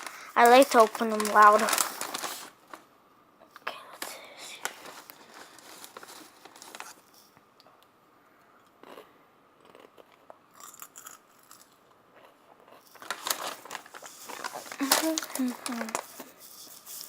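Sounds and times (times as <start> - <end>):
potato chips crunching: 9.6 - 16.1.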